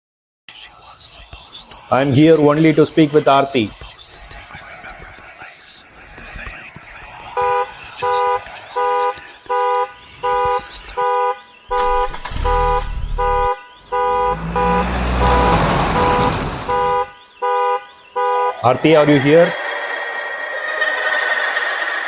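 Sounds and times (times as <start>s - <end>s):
alarm-like beeping: 7.4s - 20.5s.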